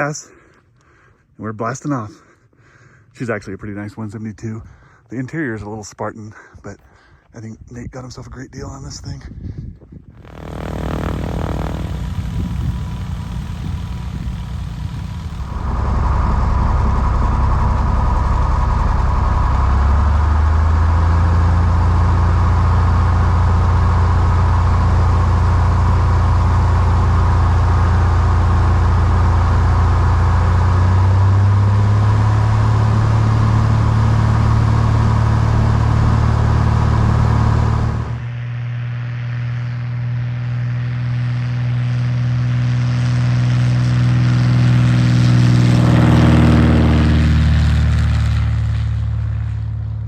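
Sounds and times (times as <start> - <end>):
light aircraft engine and propeller: 10.2 - 50.0.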